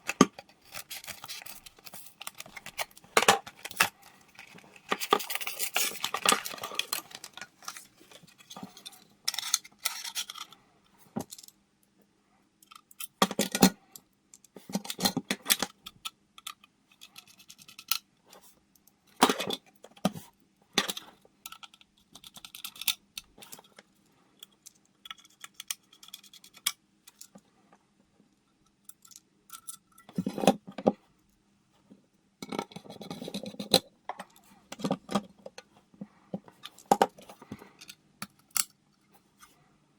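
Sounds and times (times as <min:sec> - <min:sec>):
computer parts clicking and scraping: 0:00.0 - 0:10.6.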